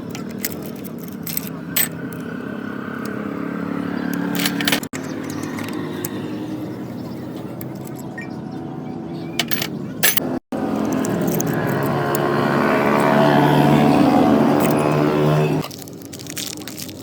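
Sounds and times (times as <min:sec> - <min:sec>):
sharp metallic clicks: 0:04.1 - 0:06.2, 0:09.4 - 0:13.1
car engine running: 0:09.2 - 0:15.6.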